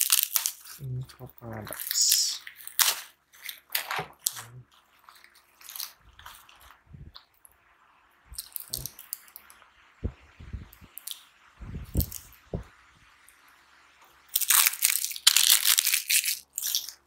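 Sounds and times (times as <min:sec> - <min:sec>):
packaging crinkling: 0:00.0 - 0:00.8, 0:01.7 - 0:06.8, 0:14.3 - 0:17.0.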